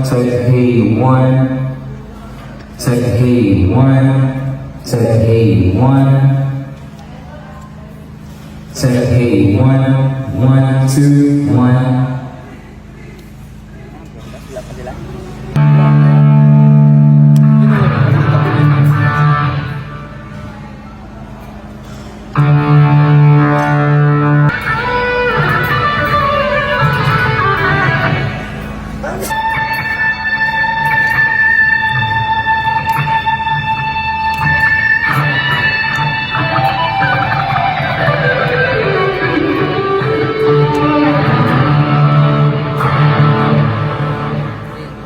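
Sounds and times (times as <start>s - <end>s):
single guitar notes: 15.5s - 20.8s, 21.8s - 45.0s
guitar chords ringing: 15.5s - 21.3s, 22.3s - 45.0s.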